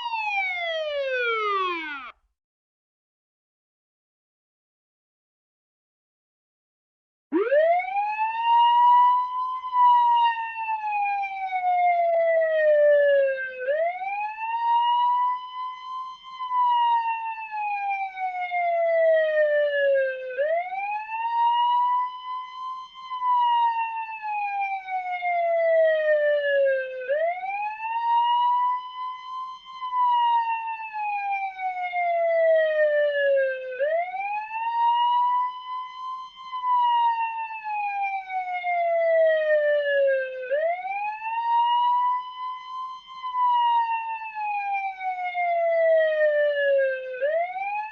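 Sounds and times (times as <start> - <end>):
wailing siren: 0.0 - 2.2, 7.3 - 47.9.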